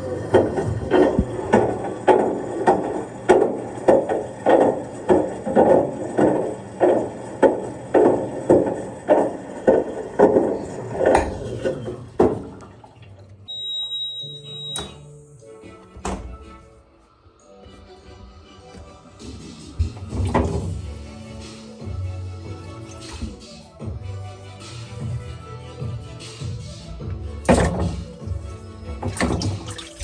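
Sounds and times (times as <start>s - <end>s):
high electronic beep: 13.5s - 15.0s
washing machine drum thudding: 19.8s - 20.8s, 27.4s - 28.4s, 29.0s - 30.0s.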